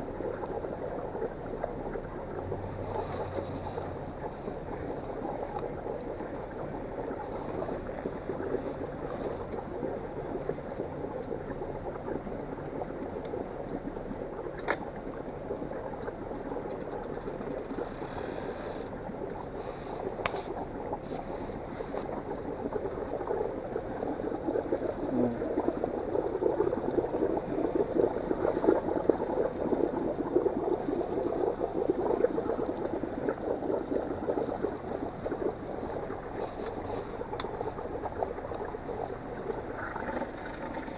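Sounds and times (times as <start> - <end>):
water sloshing and splashing: 0.0 - 24.8, 25.6 - 40.9.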